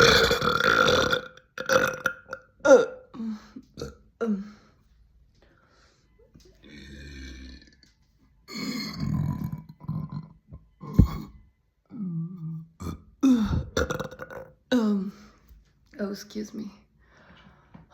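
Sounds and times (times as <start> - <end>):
woman burping: 0.0 - 4.5, 8.5 - 12.0, 12.8 - 15.1.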